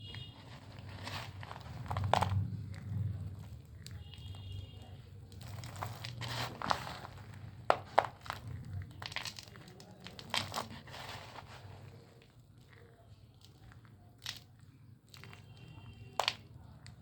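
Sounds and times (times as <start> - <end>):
dry clay crumbling and crunching: 0.0 - 17.0
clay cracking: 0.1 - 17.0.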